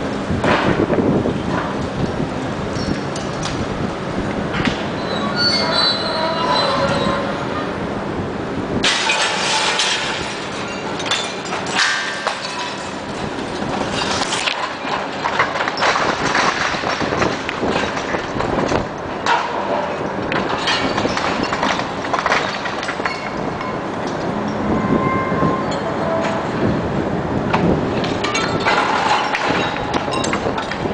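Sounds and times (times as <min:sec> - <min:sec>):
bricks crashing down: 0:08.8 - 0:23.4, 0:28.0 - 0:30.9.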